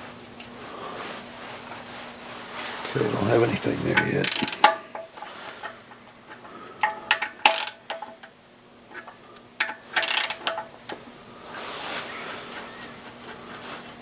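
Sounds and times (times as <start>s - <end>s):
ratchet and metal tools clicking: 10.0s - 10.5s.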